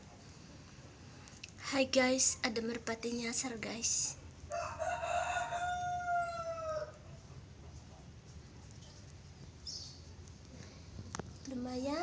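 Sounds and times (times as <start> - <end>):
rooster crowing: 4.5 - 7.1.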